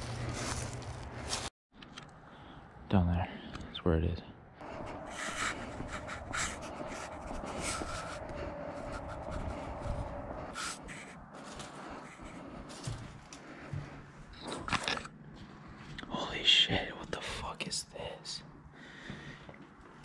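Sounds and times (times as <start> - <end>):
footsteps: 0.0 - 1.5, 4.6 - 14.4
close breathing: 4.6 - 14.6, 18.5 - 20.0
steady drone: 4.6 - 15.9.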